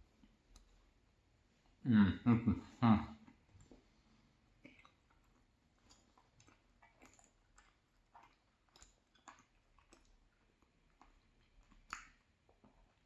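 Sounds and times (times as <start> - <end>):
close-up chewing: 3.2 - 13.0
wet mouth clicks: 4.6 - 13.0.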